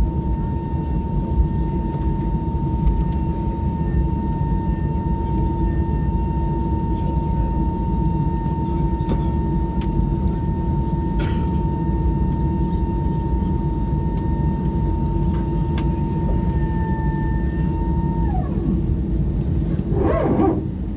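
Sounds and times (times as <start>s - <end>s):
aircraft cabin engine rumble: 0.0s - 20.9s
whine sliding down in pitch: 19.6s - 20.8s.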